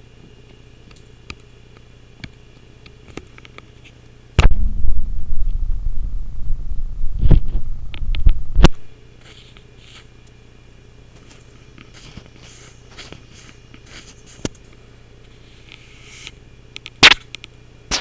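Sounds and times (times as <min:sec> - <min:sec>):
loud low electrical hum: 0:00.0 - 0:18.0
sharp click: 0:07.2 - 0:08.9
light scratches: 0:11.3 - 0:14.5.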